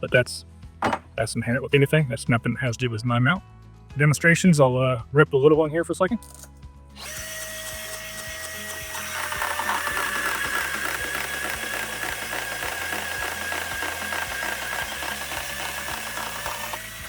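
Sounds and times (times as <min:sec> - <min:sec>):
band saw cutting metal: 0:07.1 - 0:17.0.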